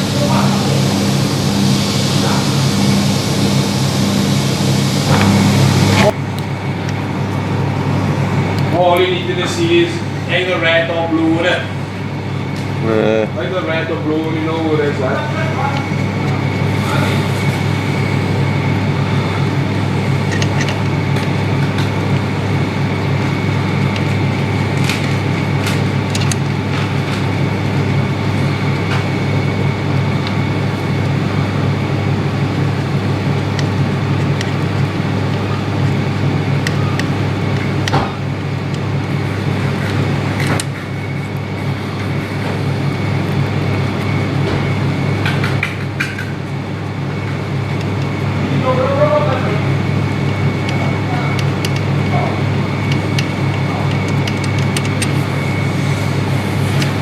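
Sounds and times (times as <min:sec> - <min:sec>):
faint high whine: 0:00.0 - 0:57.0
low mechanical hum: 0:00.0 - 0:57.0.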